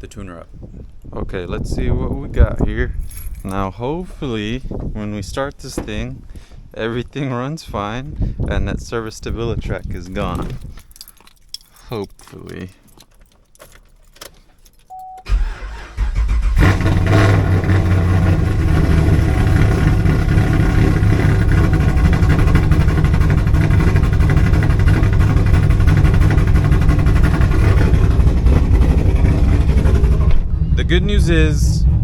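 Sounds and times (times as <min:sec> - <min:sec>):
starter cranking engine: 0:15.3 - 0:31.2
car engine idling loudly: 0:16.5 - 0:32.0.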